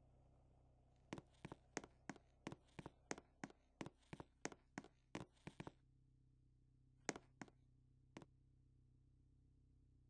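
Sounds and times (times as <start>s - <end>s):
faint low hum: 0.0s - 4.1s.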